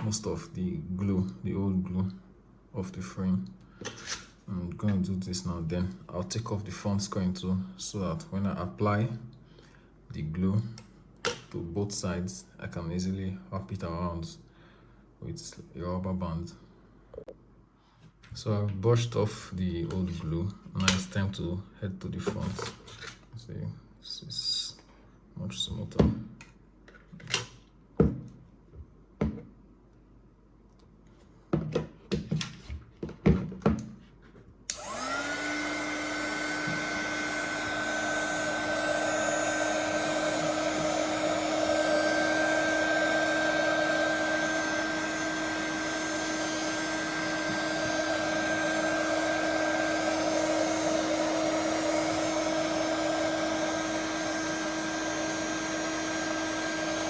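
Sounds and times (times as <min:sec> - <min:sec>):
hot-air blower whining: 0:34.7 - 0:57.0.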